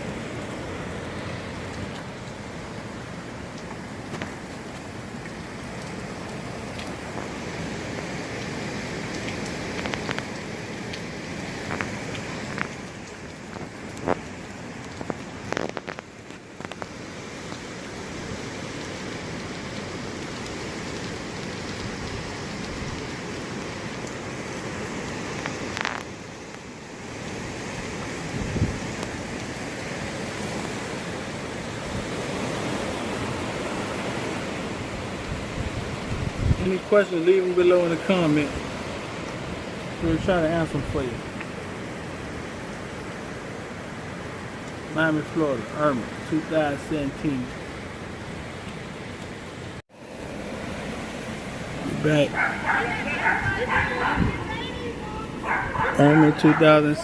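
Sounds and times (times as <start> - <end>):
heavy rain: 0.0 - 57.0
hurricane wind: 0.0 - 57.0
raindrops ticking: 0.4 - 28.2, 28.8 - 30.0, 44.5 - 49.5.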